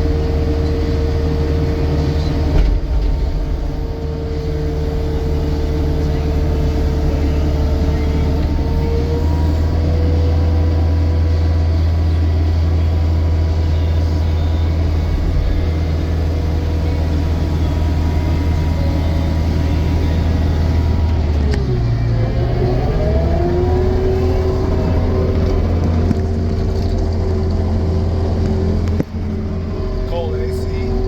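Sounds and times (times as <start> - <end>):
diesel engine running: 0.0 - 31.0
faint whine: 11.7 - 31.0.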